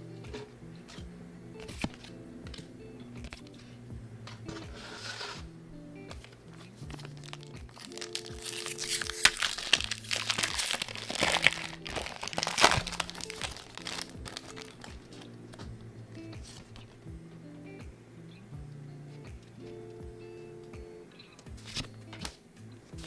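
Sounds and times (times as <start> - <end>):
quiet background music: 0.0 - 23.0
foil wrapper crinkling and tearing: 6.2 - 15.3.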